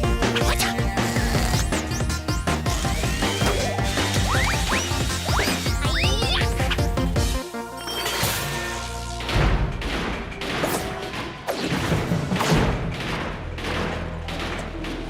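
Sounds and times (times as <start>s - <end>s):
fast cartoon action music: 0.0s - 15.0s
fight thuds and crashes: 9.2s - 15.0s.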